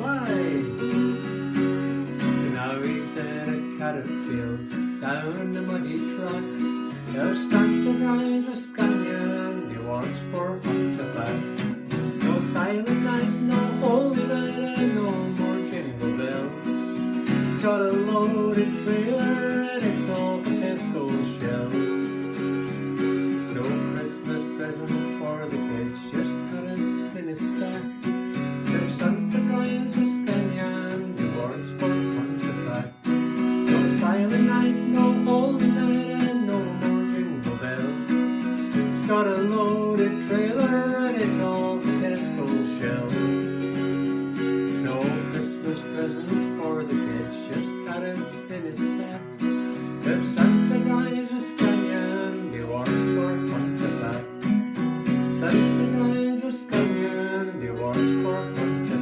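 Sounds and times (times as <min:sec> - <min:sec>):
strummed acoustic guitar: 0:00.0 - 0:59.0.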